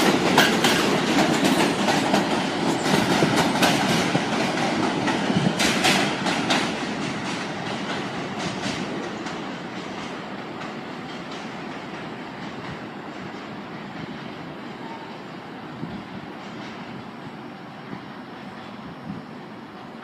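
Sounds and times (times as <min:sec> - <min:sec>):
wheels clicking over rail joints: 0:00.0 - 0:12.8
subway train running on track: 0:00.0 - 0:20.0.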